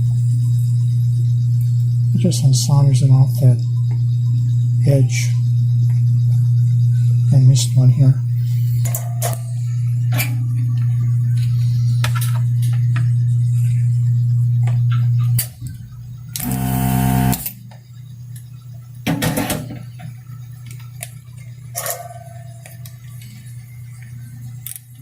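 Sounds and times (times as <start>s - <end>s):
desoldering vacuum pump buzzing: 0.0s - 25.0s.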